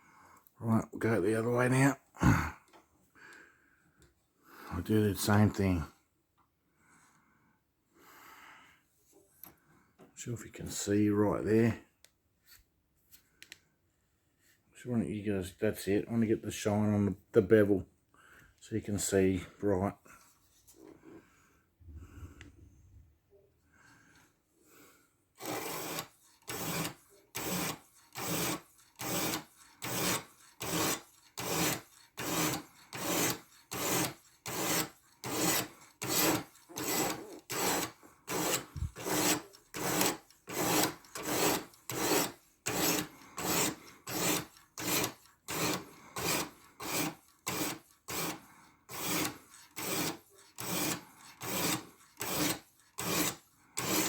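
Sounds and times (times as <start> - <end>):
knife rasping on sharpening stone: 25.4 - 54.0.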